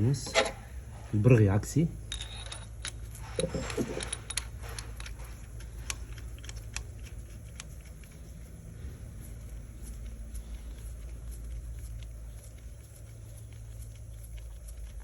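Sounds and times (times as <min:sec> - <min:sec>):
metal tools clinking: 0:02.1 - 0:05.1.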